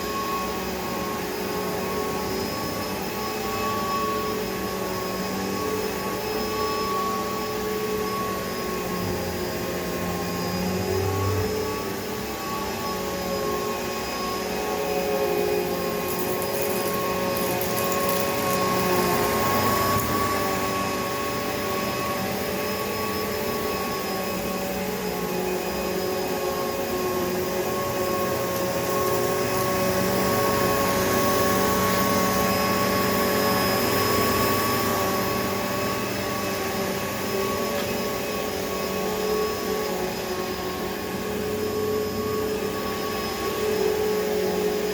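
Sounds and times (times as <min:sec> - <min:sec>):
vacuum cleaner running: 0:00.0 - 0:44.9.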